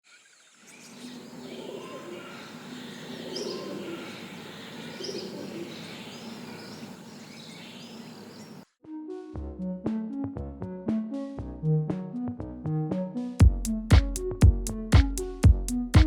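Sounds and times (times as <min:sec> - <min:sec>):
small birds chirping: 0:00.1 - 0:08.6
pigeons cooing: 0:01.0 - 0:08.6.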